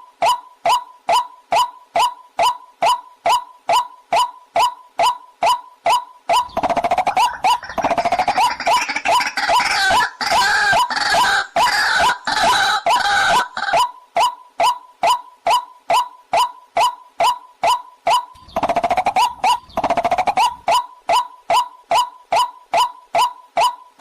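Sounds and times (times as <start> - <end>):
waterhen call: 1.1 - 14.0
chorus of overlapping bird calls: 3.3 - 14.4, 16.7 - 23.0.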